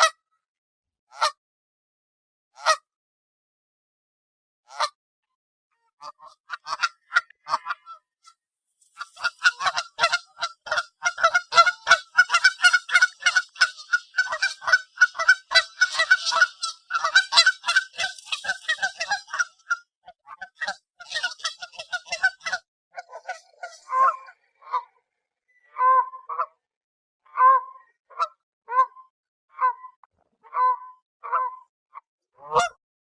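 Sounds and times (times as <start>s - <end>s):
geese honking: 8.9s - 24.8s.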